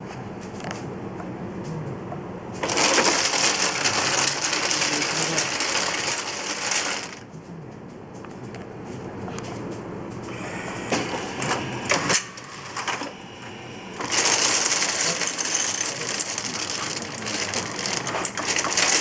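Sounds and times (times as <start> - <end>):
mahjong tiles clattering: 2.6 - 7.2, 14.0 - 19.0
table motor whirring: 10.3 - 19.0.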